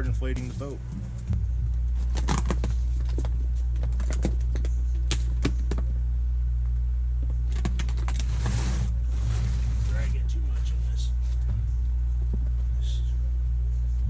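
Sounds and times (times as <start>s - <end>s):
electric air pump humming: 0.0s - 3.8s.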